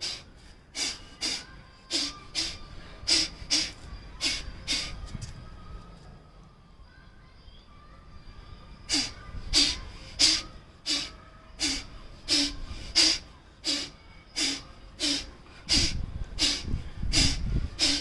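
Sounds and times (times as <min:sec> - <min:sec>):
forceful nasal exhalations: 0:00.0 - 0:05.0, 0:08.9 - 0:18.0.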